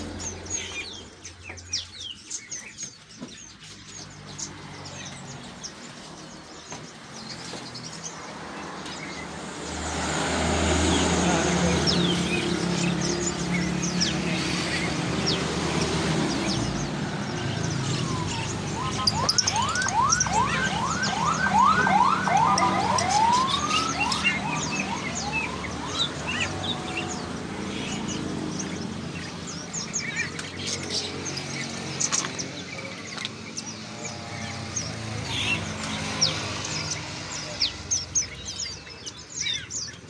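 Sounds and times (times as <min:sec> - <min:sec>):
songbirds chirping: 0:00.0 - 0:40.0
bird whistling rising notes: 0:17.5 - 0:27.3.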